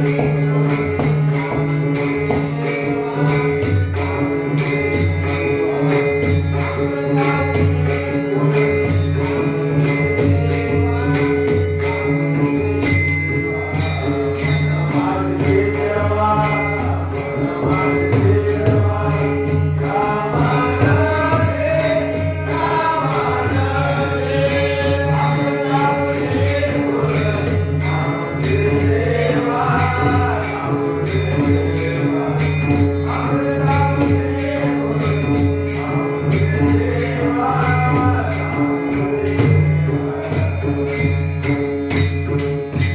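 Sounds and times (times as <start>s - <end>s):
jingling metal percussion: 0.0s - 42.9s
group singing: 14.6s - 40.4s.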